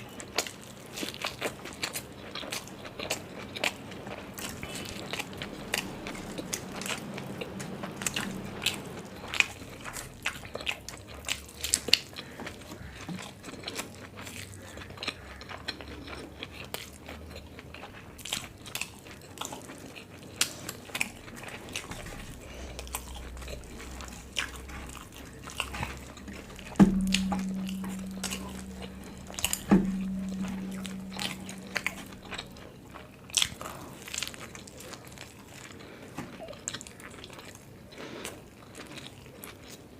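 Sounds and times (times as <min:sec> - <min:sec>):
person chewing food: 0:00.0 - 0:39.9
low ringing tone: 0:04.4 - 0:09.4, 0:22.3 - 0:33.0
sharp knocks: 0:26.3 - 0:32.5.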